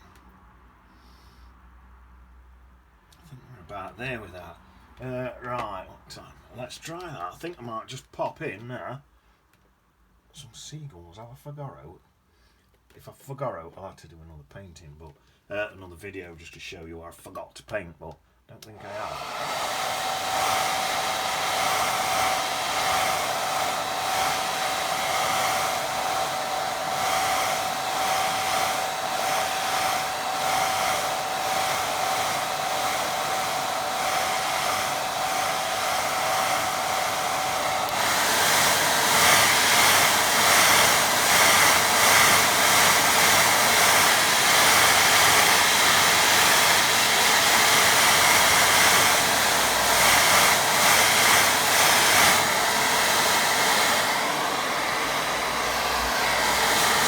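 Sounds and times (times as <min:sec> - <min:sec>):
hair dryer blowing: 0:18.7 - 0:57.0.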